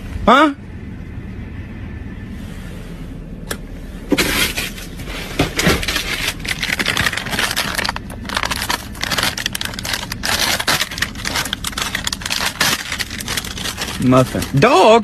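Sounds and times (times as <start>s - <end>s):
food packaging crinkling: 5.5s - 14.6s.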